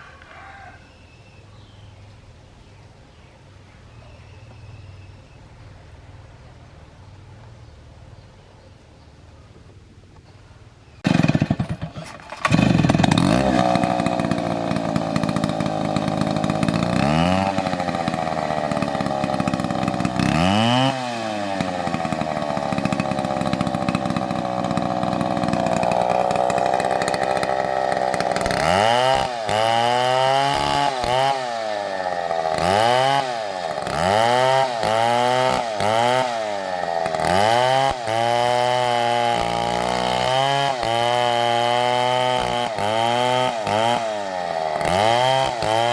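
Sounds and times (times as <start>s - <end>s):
chainsaw running at high revs: 11.0s - 45.9s.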